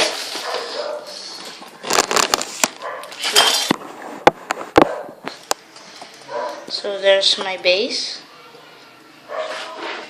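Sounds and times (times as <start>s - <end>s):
objects handled clattering: 0.0s - 3.8s.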